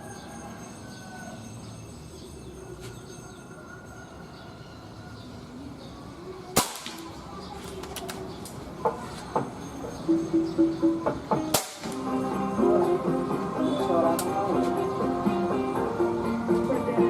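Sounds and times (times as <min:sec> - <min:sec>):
air rifle shot: 0:06.6 - 0:07.1, 0:11.5 - 0:12.0.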